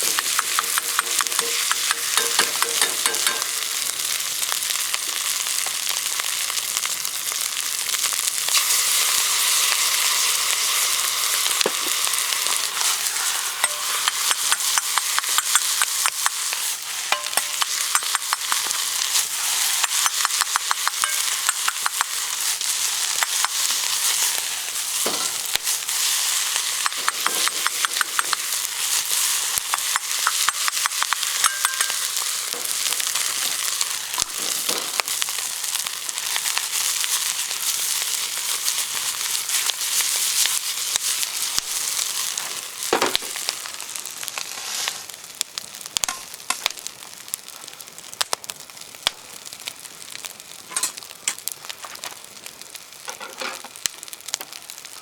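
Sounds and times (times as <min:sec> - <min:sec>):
quick clicks and taps: 0:00.0 - 0:03.4, 0:26.9 - 0:28.5
rice sizzling in a wok: 0:00.0 - 0:55.0.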